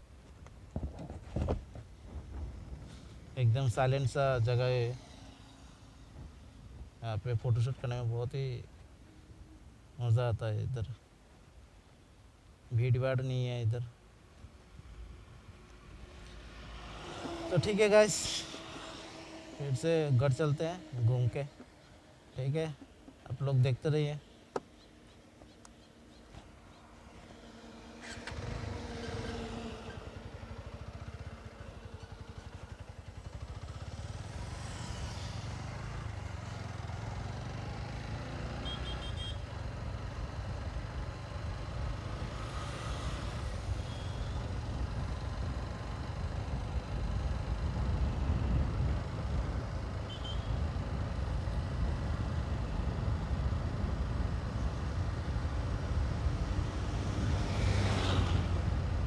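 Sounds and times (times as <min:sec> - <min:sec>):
motorcycle engine rumble: 0:24.5 - 0:59.0.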